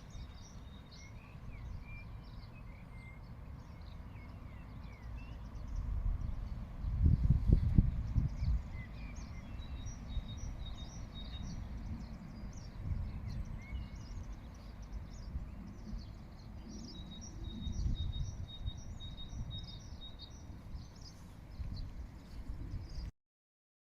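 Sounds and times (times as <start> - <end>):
songbirds chirping and singing: 0.0 - 23.1
steady low rumble: 5.4 - 23.1.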